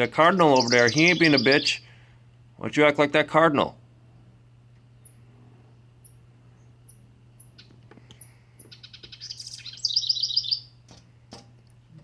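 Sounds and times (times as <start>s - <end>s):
fast bird trill: 0.0s - 1.9s, 6.9s - 10.8s
songbird high chip notes: 0.0s - 2.0s, 6.0s - 10.8s.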